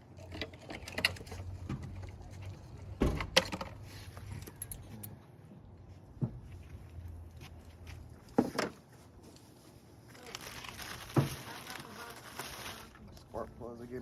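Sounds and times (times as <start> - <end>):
metal tools clinking and knocking: 3.2 - 5.2.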